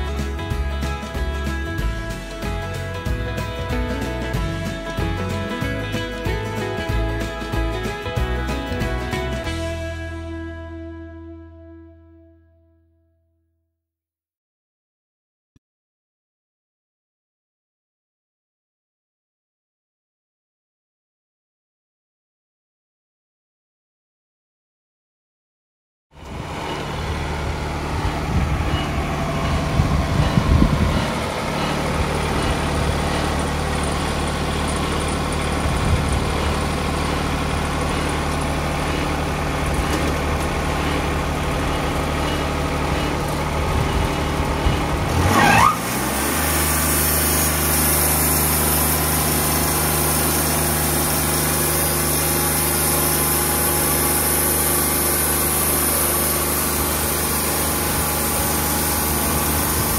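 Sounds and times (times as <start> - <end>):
sawmill engine running: 0.0 - 11.2, 26.2 - 59.9.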